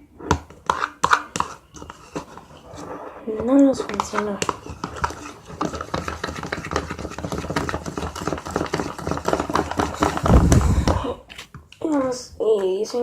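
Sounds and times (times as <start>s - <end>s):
heavy low thump: 10.3s - 11.2s.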